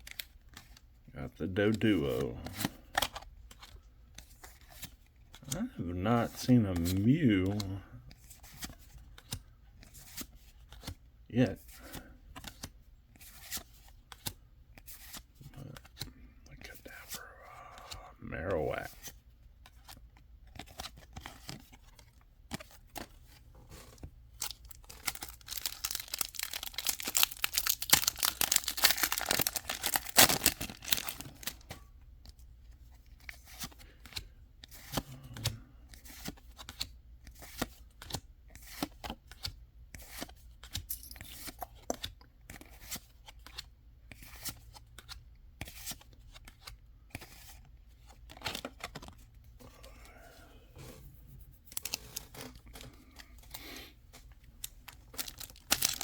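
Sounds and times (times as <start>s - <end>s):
cards flipping: 6.3s - 11.0s, 12.3s - 16.1s, 16.7s - 18.0s, 18.9s - 31.8s, 33.1s - 49.2s, 51.7s - 56.0s
foil wrapper tearing: 24.8s - 31.4s, 55.2s - 56.0s.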